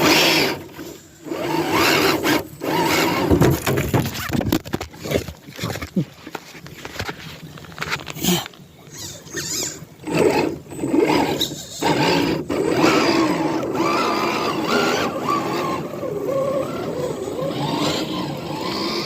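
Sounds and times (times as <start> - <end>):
toy car motor whining: 0.0 - 3.5, 8.9 - 19.0.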